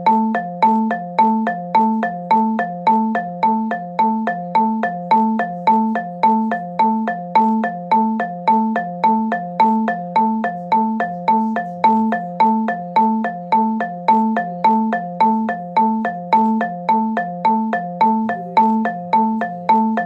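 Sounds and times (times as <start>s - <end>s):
marimba-like alert chime: 0.0s - 20.0s.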